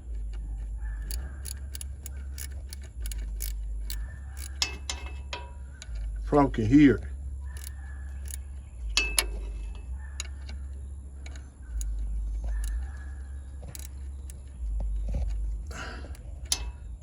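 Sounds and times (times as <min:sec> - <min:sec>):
ratchet wrench clicking: 0:01.0 - 0:05.6, 0:07.5 - 0:09.6, 0:11.2 - 0:13.0, 0:13.6 - 0:14.6, 0:15.7 - 0:17.0.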